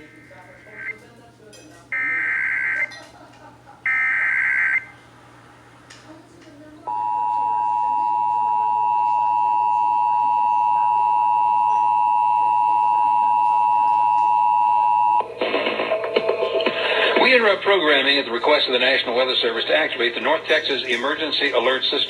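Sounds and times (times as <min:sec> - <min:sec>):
two-tone attention signal: 0:06.9 - 0:15.3.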